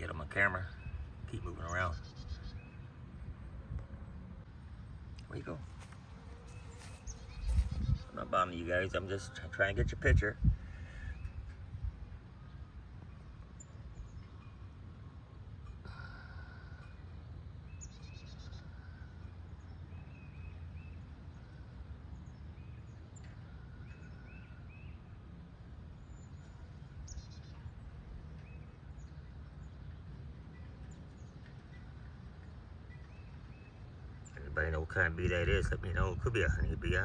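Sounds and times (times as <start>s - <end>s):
low outdoor rumble: 0.0s - 37.0s
bird chirps: 0.7s - 3.0s, 5.8s - 8.6s, 16.8s - 25.1s.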